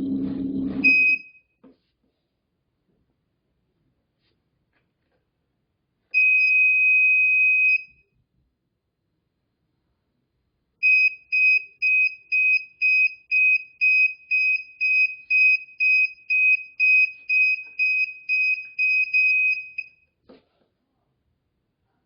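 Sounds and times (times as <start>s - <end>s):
alarm buzzer beeping: 0.5s - 1.3s, 10.8s - 19.9s.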